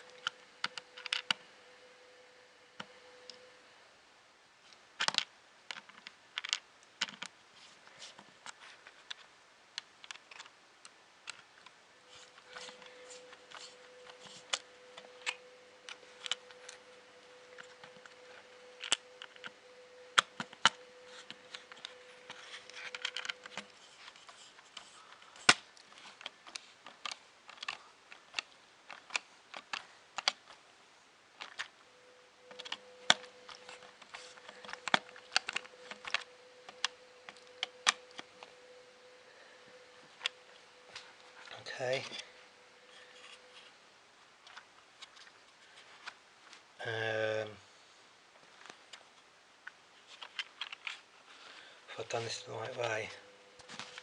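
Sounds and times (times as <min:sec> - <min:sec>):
faint steady hum: 0:00.0 - 0:54.0
plastic parts clicking: 0:05.0 - 0:07.3, 0:08.1 - 0:10.5, 0:17.5 - 0:30.6, 0:31.4 - 0:31.7, 0:50.1 - 0:51.0.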